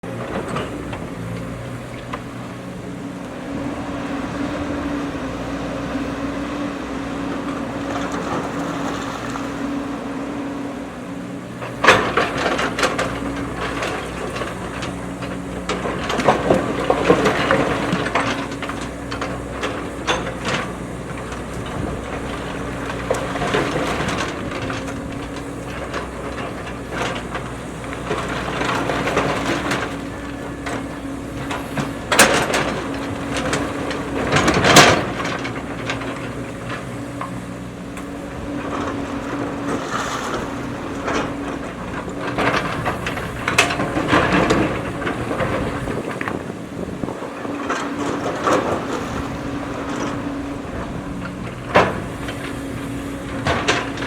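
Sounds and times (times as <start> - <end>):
diesel engine running: 0.0 - 54.0
clanking and scraping: 11.4 - 54.0.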